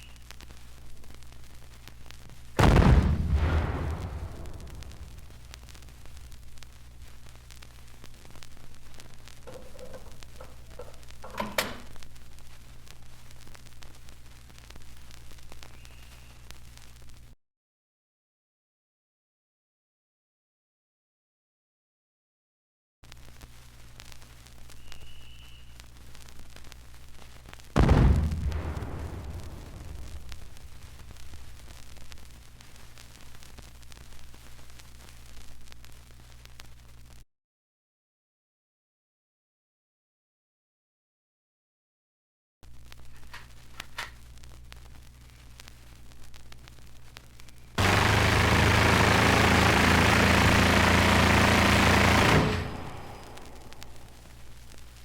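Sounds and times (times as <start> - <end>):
low hum: 0.0 - 16.3, 27.8 - 33.8, 44.6 - 55.0
vinyl record crackle: 0.0 - 17.4, 23.0 - 37.2, 42.6 - 55.0
blast rumble: 2.6 - 6.6, 27.8 - 32.2, 47.8 - 54.4.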